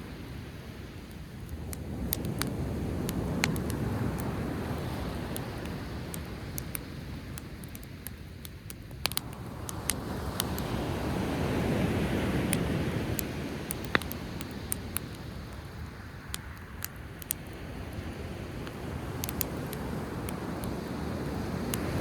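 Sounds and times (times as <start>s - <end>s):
sea waves washing ashore: 0.0s - 22.0s
campfire crackling and popping: 0.2s - 22.0s.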